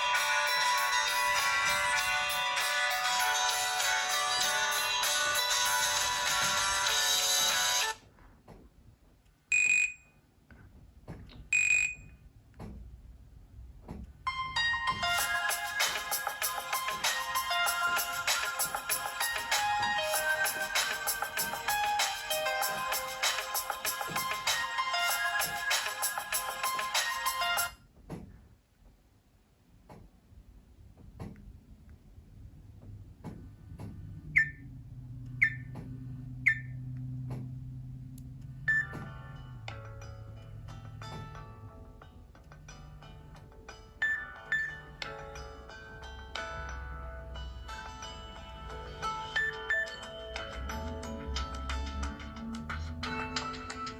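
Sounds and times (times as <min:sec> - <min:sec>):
melodic phone ringtone: 0:00.0 - 0:08.0, 0:14.3 - 0:27.7, 0:44.0 - 0:45.0, 0:47.7 - 0:52.0
short high electronic beeps: 0:09.5 - 0:10.0, 0:11.6 - 0:12.1, 0:35.4 - 0:35.7, 0:36.5 - 0:36.7
high chime ringtone notes: 0:49.2 - 0:50.4.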